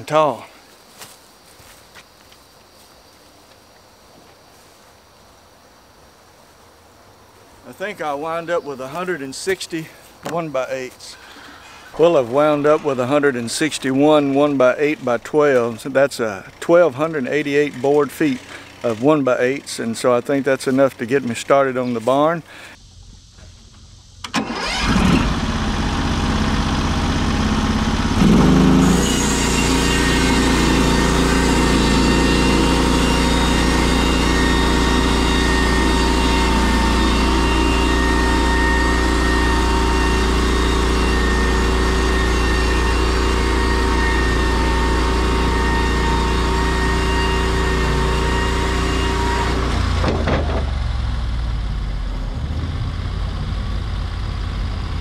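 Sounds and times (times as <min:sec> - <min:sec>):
sawmill engine starting and revving: 0:11.4 - 0:21.2, 0:23.7 - 0:55.0.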